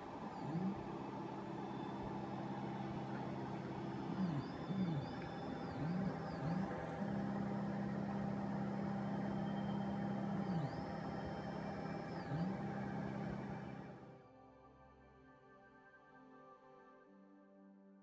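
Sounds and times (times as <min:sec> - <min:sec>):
stepper motors whining: 0:00.0 - 0:14.0.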